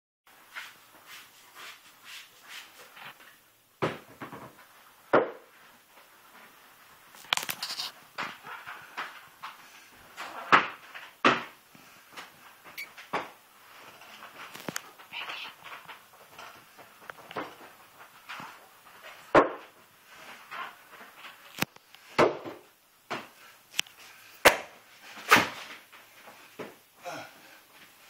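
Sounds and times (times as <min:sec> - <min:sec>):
floor scrubbing by hand: 0:00.3 - 0:03.4.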